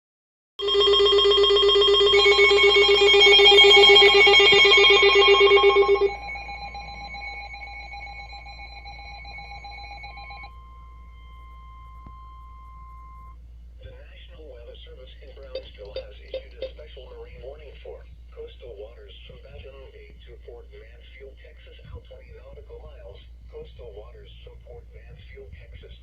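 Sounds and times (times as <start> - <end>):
electronic alert alarm trilling: 0.6 - 13.4, 15.4 - 16.7
thin steady tone: 1.8 - 13.4, 15.2 - 19.0.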